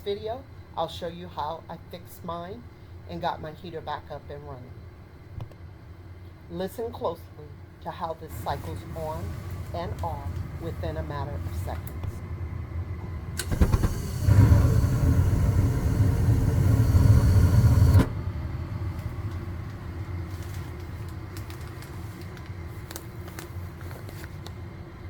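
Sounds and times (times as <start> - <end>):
steady hum: 0.0 - 25.0
burner low rumble: 6.7 - 23.2
furnace click: 13.4 - 18.2.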